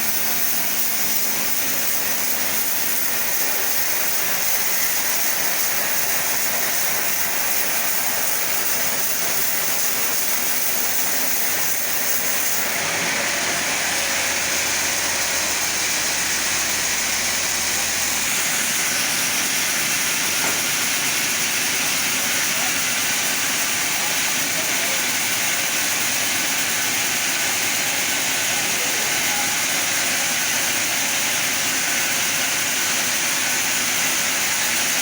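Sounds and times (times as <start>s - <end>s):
chainsaw cutting log: 0.0s - 27.6s.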